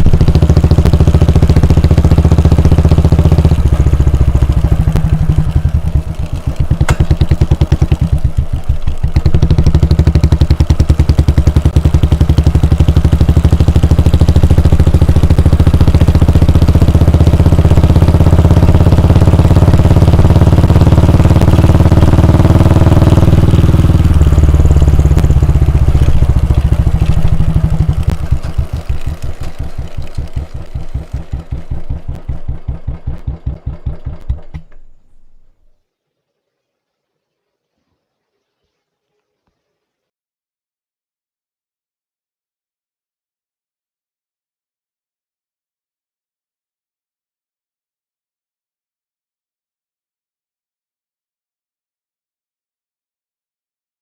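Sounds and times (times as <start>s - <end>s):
motorcycle engine thumping: 0.0s - 35.5s.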